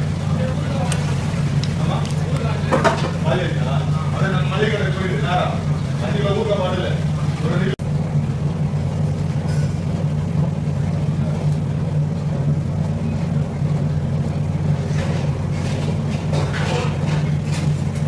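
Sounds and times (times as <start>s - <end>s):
faint voices: 0.0s - 7.8s
low motor drone: 0.0s - 18.0s.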